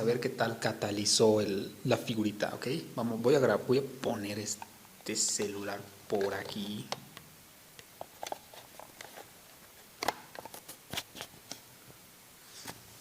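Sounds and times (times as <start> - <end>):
phone handling clicks and taps: 10.0 - 10.7.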